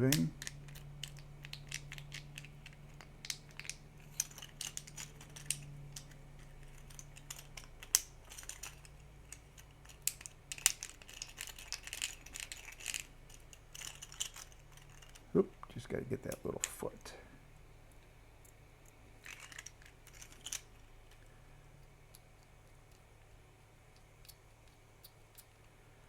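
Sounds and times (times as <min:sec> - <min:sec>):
plastic toy parts clicking: 0:00.0 - 0:15.3, 0:18.4 - 0:21.2
faint steady hum: 0:00.0 - 0:26.0.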